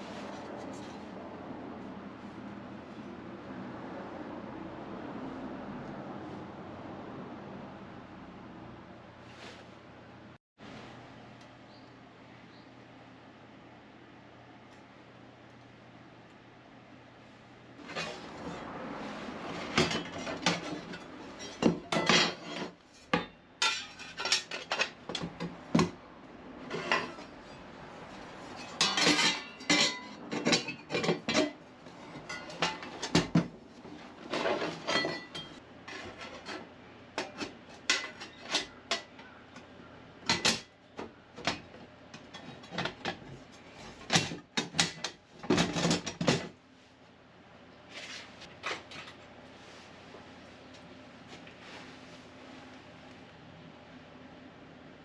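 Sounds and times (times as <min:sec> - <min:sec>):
steel plates clanking: 0:19.6 - 0:25.3, 0:28.6 - 0:33.3.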